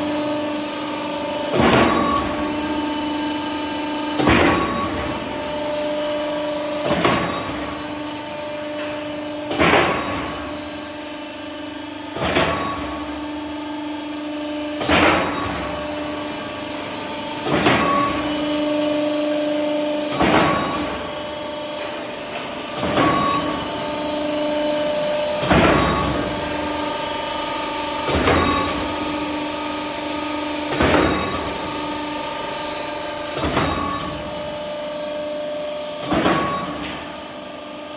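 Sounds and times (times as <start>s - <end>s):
concrete pump motor hum: 0.0s - 37.9s.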